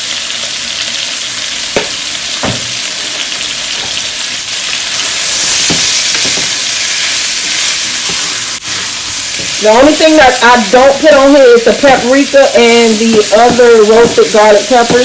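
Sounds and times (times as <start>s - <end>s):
meat sizzling in hot oil: 0.0s - 15.0s
utensil knocking against pan: 13.0s - 15.0s.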